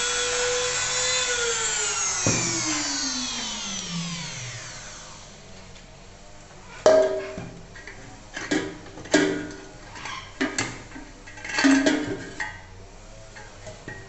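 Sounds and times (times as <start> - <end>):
rotary tool whine spinning down: 0.0 - 5.7.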